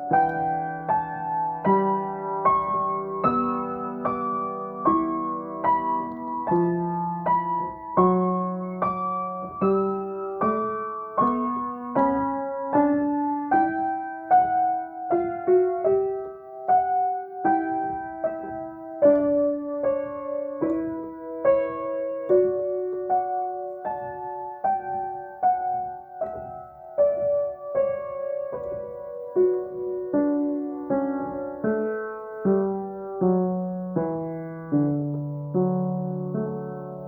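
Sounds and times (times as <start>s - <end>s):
solo piano chords: 0.0s - 37.0s.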